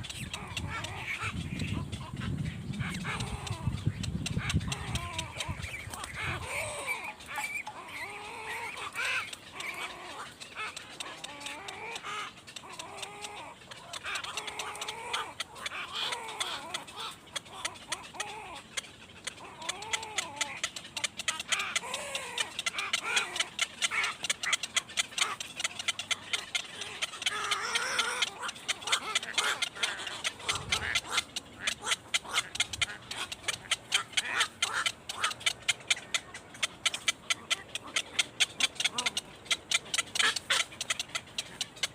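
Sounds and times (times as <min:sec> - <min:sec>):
birds calling: 0:00.0 - 0:41.9
rapid sharp clicks: 0:18.9 - 0:41.9.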